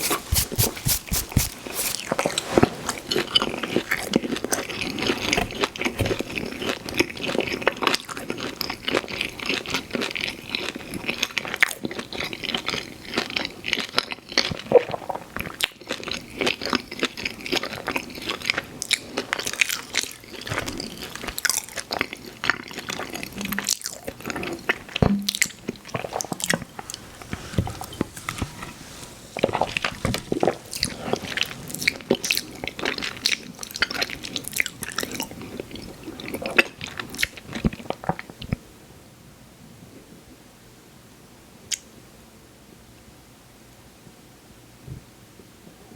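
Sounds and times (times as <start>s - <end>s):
biting and chewing pizza: 0.0s - 38.4s.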